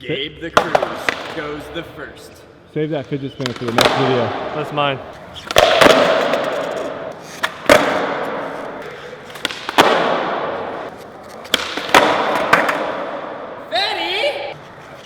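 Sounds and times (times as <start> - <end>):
skateboard wheels rolling: 5.1 - 13.1
skateboard clacking and landing: 5.5 - 10.8, 11.4 - 13.2.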